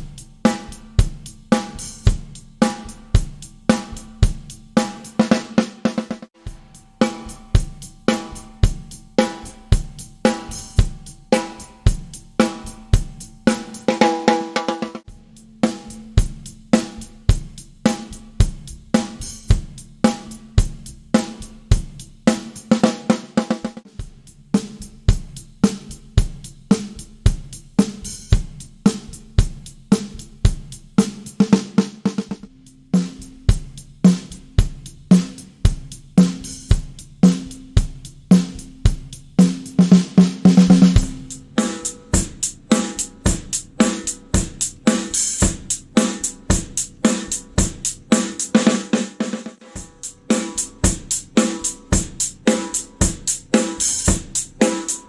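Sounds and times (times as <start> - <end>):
drum kit playing a groove: 0.0 - 55.0
snare drum ringing: 31.6 - 35.5.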